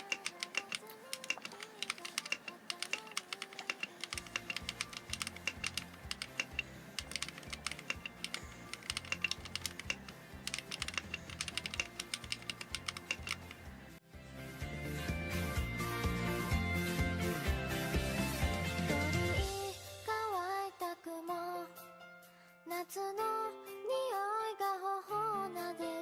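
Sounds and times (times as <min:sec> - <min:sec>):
typing on mechanical keyboard: 0:00.0 - 0:13.7
background music with bass: 0:14.2 - 0:19.9.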